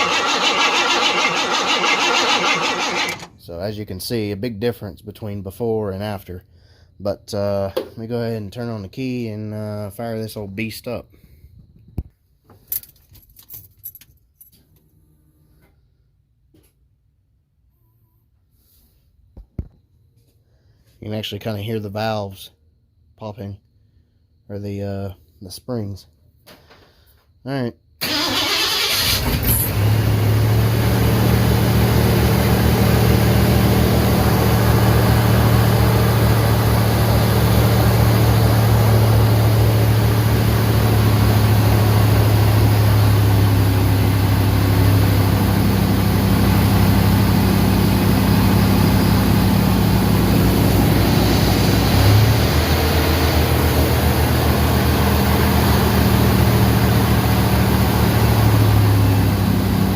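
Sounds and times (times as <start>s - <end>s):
car engine idling: 0.0s - 3.3s, 28.0s - 59.9s.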